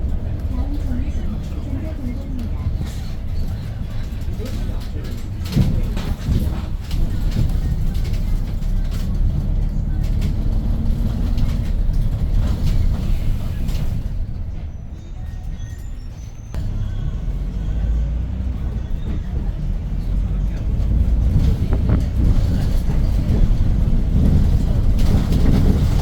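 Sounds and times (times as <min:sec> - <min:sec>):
bus engine and road rumble: 0:00.0 - 0:26.0.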